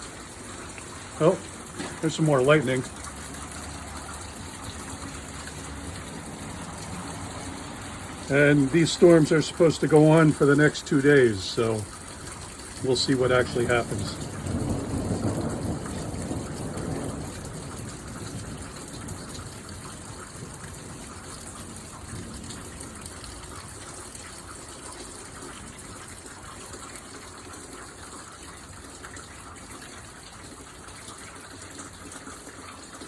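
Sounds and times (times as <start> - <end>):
running storm water: 0.0 - 33.0
steady rain: 0.0 - 33.0
low thunder rumble: 13.0 - 23.7.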